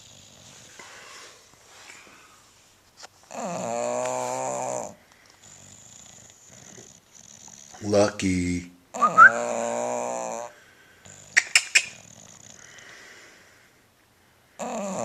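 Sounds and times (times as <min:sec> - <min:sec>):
dog snoring: 0:00.0 - 0:01.0, 0:03.3 - 0:08.0, 0:09.0 - 0:13.4, 0:14.6 - 0:15.0
dog soft breathing: 0:03.4 - 0:07.8, 0:10.3 - 0:15.0.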